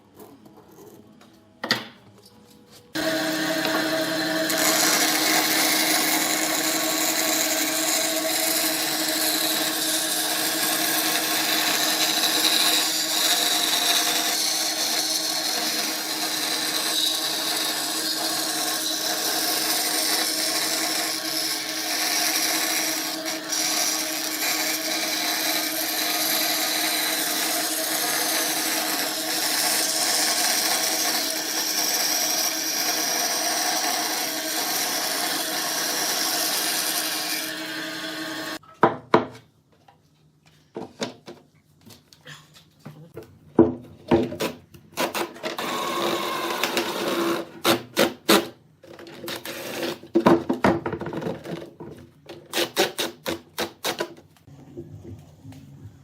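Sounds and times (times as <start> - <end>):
power tool cutting wood: 3.0 - 38.6, 45.0 - 48.5.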